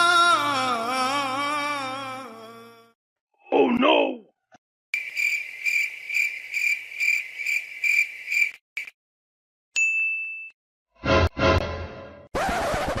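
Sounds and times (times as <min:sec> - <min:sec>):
cricket chirping: 0:05.0 - 0:08.9
bright ding: 0:09.8 - 0:10.6.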